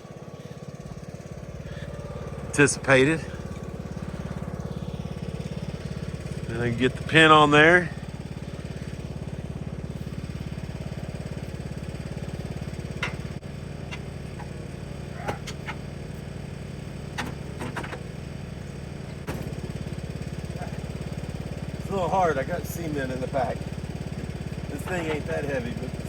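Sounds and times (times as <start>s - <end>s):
lawnmower engine idling: 0.0s - 26.0s
hitch pin clicks and clinks: 12.9s - 15.9s.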